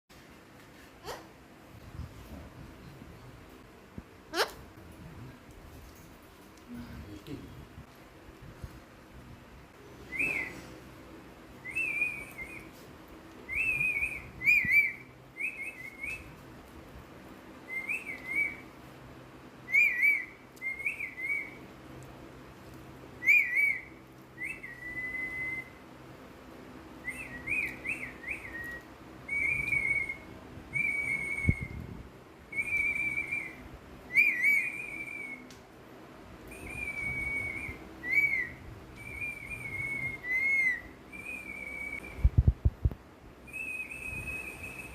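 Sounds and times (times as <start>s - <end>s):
parrot whistling: 10.1s - 10.7s, 13.5s - 16.3s, 19.7s - 21.6s, 23.2s - 25.8s, 32.5s - 35.4s, 36.5s - 42.1s.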